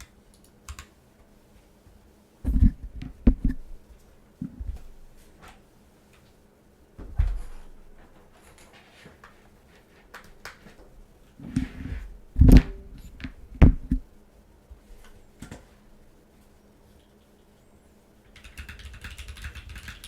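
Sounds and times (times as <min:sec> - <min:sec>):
mechanical keyboard keystrokes: 0:18.4 - 0:20.0.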